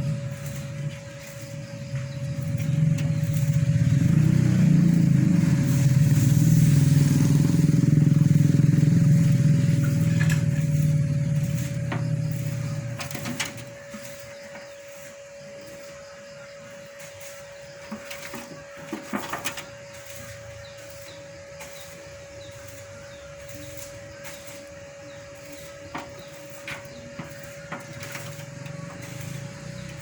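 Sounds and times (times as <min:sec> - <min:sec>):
faint thin whine: 0:09.0 - 0:30.0.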